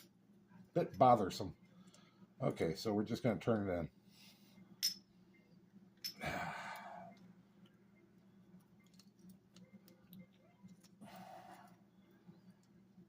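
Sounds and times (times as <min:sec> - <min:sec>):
breathy sigh: 0:06.2 - 0:07.1.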